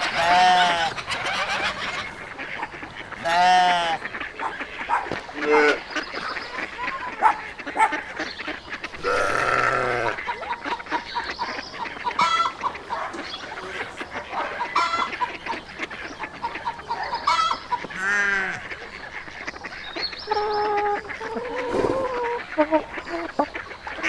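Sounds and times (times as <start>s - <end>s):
chickens clucking: 0.0s - 24.0s
geese honking: 0.0s - 24.0s.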